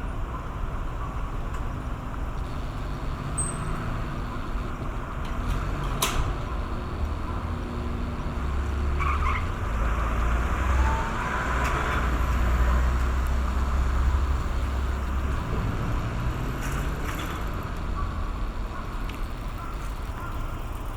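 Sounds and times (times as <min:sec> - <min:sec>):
road traffic rumble: 0:00.0 - 0:20.9.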